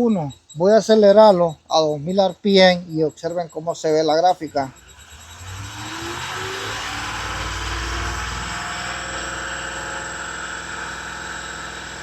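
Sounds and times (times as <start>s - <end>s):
engine running at raised speed: 4.4s - 12.0s.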